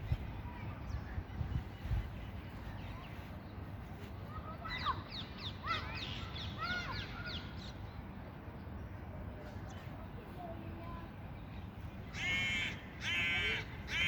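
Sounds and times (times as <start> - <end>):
birds squawking: 12.1 - 14.0.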